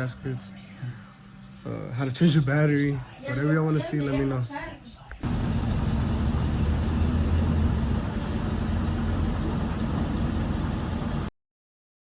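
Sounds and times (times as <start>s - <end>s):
car engine idling: 5.2s - 11.3s.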